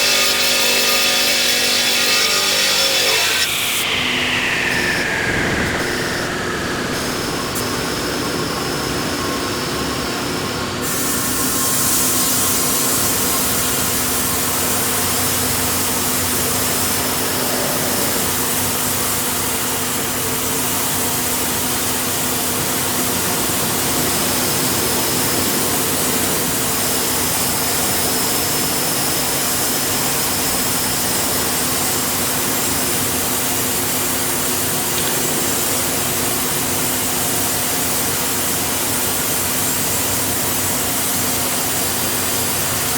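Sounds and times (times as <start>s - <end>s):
sawmill machinery sawing log: 0.0s - 4.0s.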